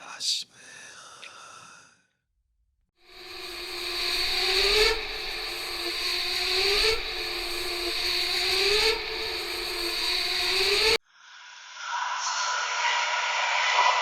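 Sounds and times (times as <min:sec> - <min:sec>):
harsh noisy grinding: 0:03.1 - 0:11.0
rising tone: 0:03.1 - 0:11.0.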